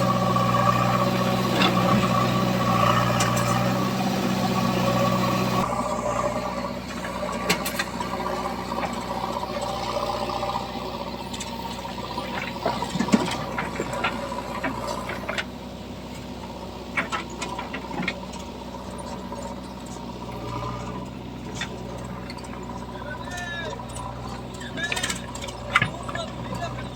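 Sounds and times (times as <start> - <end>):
diesel engine running: 0.0 - 26.9
metallic clanks and knocks: 23.8 - 26.9.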